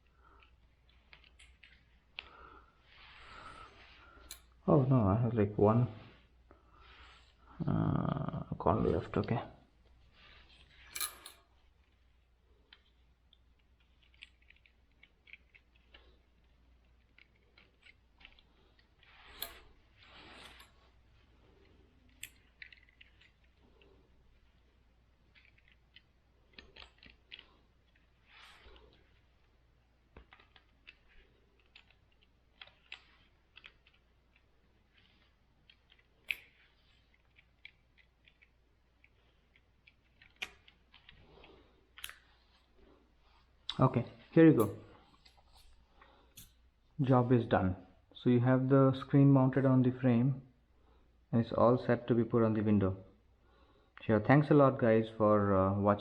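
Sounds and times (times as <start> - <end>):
light clicks and scrapes on frame: 9.9 - 46.6.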